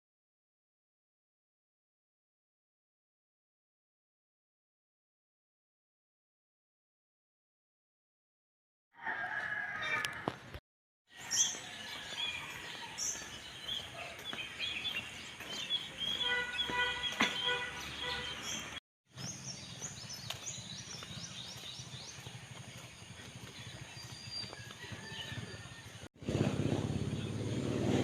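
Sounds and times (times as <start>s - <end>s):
small birds chirping: 11.2s - 25.9s.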